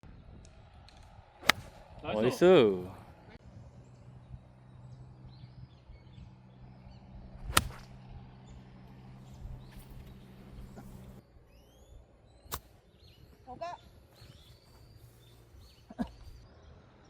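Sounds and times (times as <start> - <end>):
steady low hum: 2.9 - 13.4
golf club striking ball: 7.4 - 11.2
faint bird chirps: 9.3 - 17.0.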